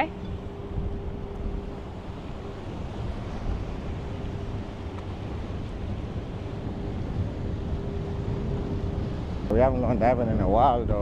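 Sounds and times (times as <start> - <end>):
faint steady hum: 0.0 - 10.9
ocean surf: 0.0 - 11.0
wind buffeting microphone: 0.0 - 11.0.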